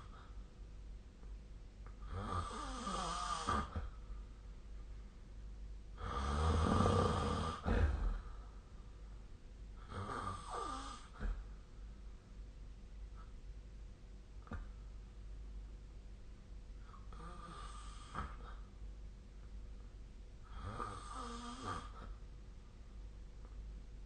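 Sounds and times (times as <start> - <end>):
person snoring: 2.0 - 3.9, 6.0 - 8.4, 9.8 - 11.4, 16.9 - 18.6, 20.4 - 22.2.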